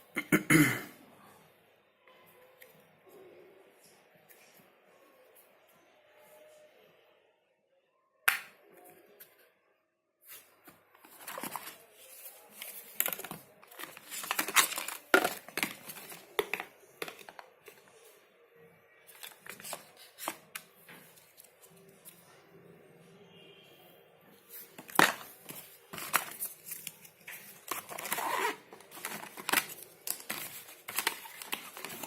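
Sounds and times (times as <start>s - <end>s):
packaging clicks: 11.0s - 11.8s, 12.6s - 17.8s, 24.8s - 32.0s
packaging rustling: 11.0s - 17.8s, 19.1s - 21.7s, 24.6s - 32.0s.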